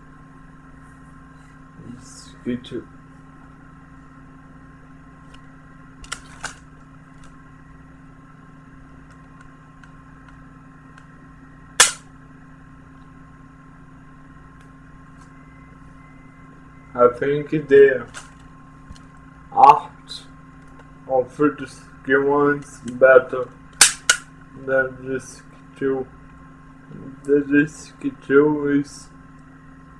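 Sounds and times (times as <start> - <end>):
steady low hum: 0.0 - 29.9
plastic case snapping: 23.8 - 24.3.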